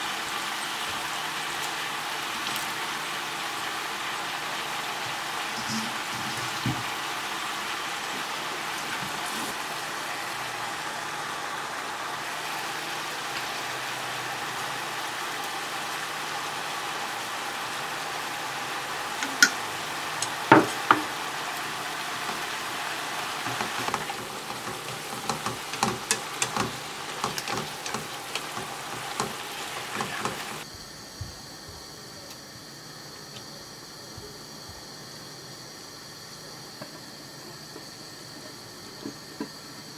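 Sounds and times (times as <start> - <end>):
food sizzling in a frying pan: 0.0 - 30.7
utensil scraping a pan: 5.6 - 7.0, 22.2 - 30.6.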